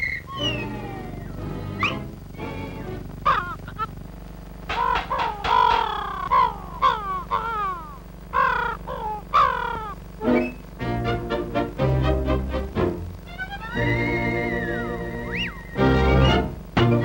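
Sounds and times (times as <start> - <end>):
cartoon bird chirps: 0.0 - 2.1, 3.2 - 3.9, 4.7 - 10.7, 13.3 - 16.4.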